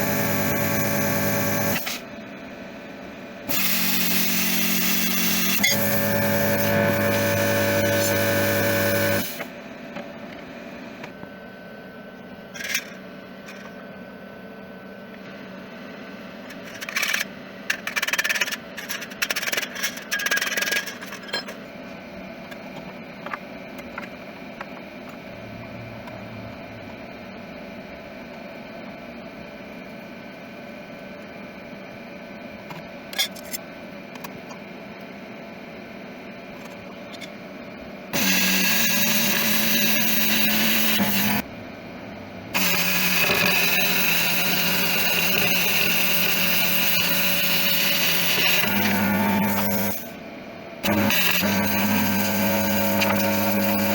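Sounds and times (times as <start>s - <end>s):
angle grinder on sheet steel: 0.0s - 2.0s, 3.5s - 9.4s, 38.2s - 41.4s, 42.6s - 50.1s, 50.8s - 53.9s.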